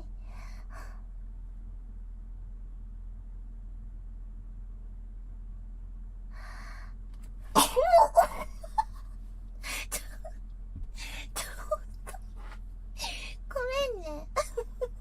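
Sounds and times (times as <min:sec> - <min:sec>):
soft bursts of breath: 0:06.3 - 0:07.0
woman sneezing: 0:07.6 - 0:08.2.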